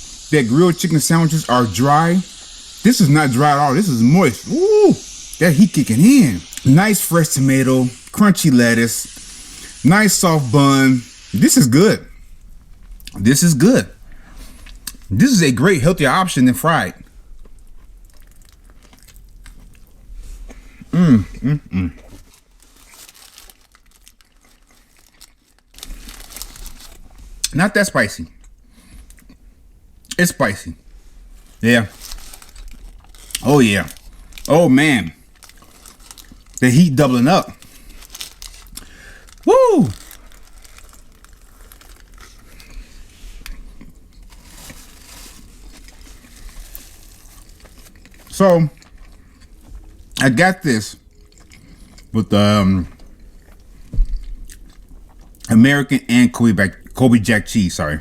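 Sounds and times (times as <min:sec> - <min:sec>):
man humming approval: 0:04.4 - 0:05.0, 0:20.9 - 0:22.0, 0:39.5 - 0:40.0
man chewing food: 0:17.3 - 0:22.8, 0:23.8 - 0:26.1, 0:45.4 - 0:50.2, 0:51.0 - 0:52.2, 0:52.9 - 0:55.5
paper wrapper crinkling: 0:22.1 - 0:27.2, 0:31.6 - 0:49.6.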